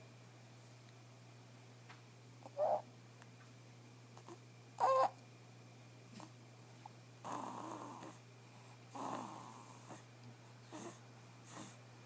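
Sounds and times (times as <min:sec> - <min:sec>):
baby snoring softly: 0:07.2 - 0:11.8.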